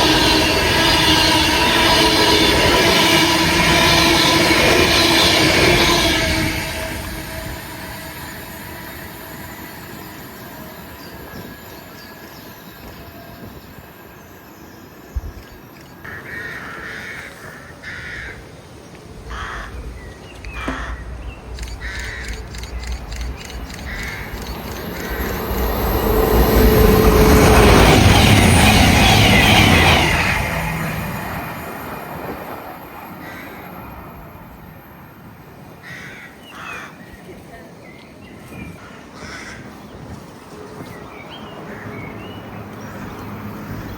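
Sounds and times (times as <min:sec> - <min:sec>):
train passing: 0:00.0 - 0:43.9
crows cawing: 0:16.0 - 0:18.4, 0:19.3 - 0:19.8, 0:20.6 - 0:21.0, 0:21.6 - 0:25.4, 0:33.2 - 0:33.7, 0:35.8 - 0:37.0, 0:38.8 - 0:39.8.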